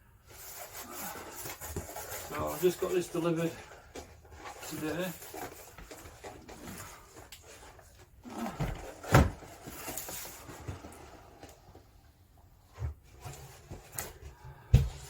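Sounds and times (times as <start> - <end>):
cardboard box rustling: 0.4 - 11.9
heavy thump on box: 8.5 - 9.4, 14.7 - 15.0.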